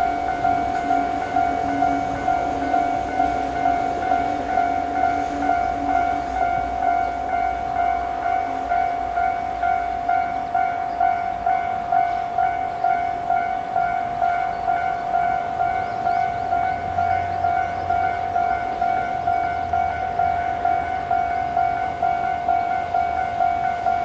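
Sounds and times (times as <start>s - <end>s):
level crossing warning bell: 0.0s - 24.0s.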